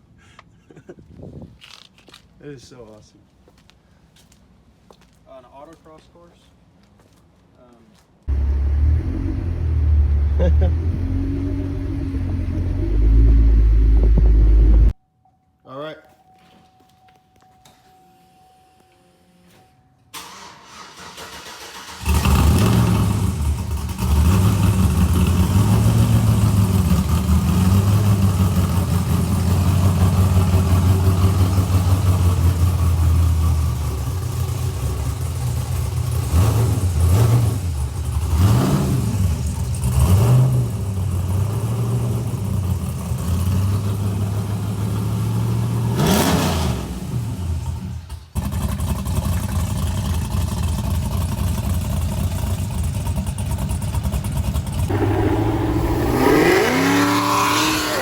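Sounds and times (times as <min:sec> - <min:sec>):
car engine cranking and starting: 0:08.3 - 0:15.0, 0:20.2 - 0:58.0
car engine idling and revving: 0:08.3 - 0:15.0, 0:21.3 - 0:58.0.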